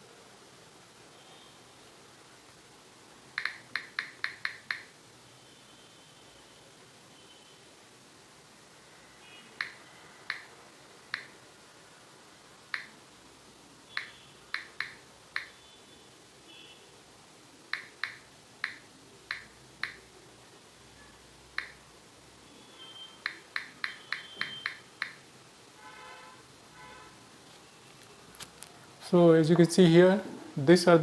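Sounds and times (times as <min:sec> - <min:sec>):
sharp single clicks: 0:03.4 - 0:04.9, 0:11.1 - 0:11.3, 0:12.7 - 0:13.0, 0:14.0 - 0:15.6, 0:17.7 - 0:20.0, 0:21.6 - 0:21.8.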